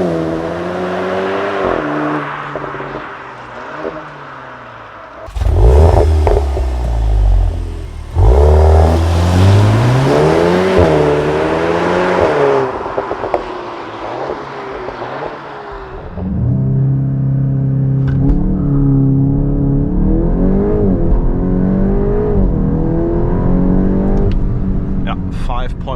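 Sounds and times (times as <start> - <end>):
exhaust crackles: 5.2 - 13.5
car engine revving: 5.2 - 25.4.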